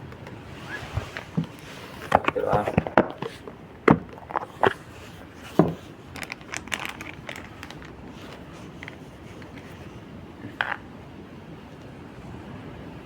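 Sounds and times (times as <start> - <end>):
container clicks and rustles: 0.5 - 10.8.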